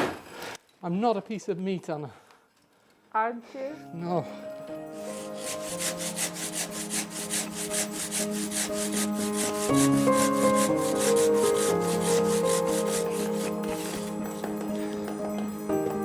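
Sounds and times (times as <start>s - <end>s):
background music: 3.3s - 16.0s
handsaw rasping through stone: 5.0s - 15.0s.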